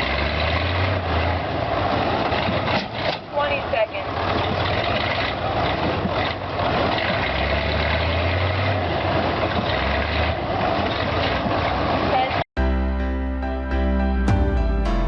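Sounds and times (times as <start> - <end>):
heavy vehicle engine running: 0.0 - 12.4.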